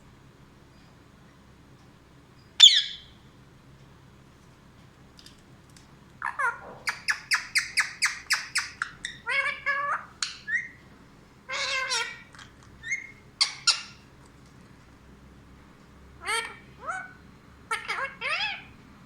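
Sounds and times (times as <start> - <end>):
parrot calling and squawking: 2.6 - 3.1, 6.2 - 10.8, 11.4 - 14.1, 16.2 - 18.7.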